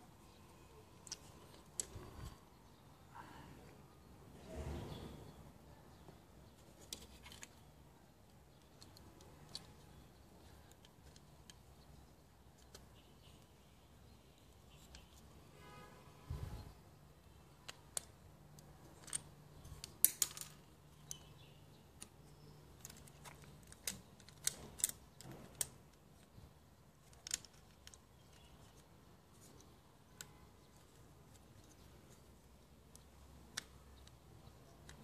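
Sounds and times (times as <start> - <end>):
plastic parts clicking and tapping: 1.0 - 2.3, 8.3 - 13.4, 17.6 - 35.0.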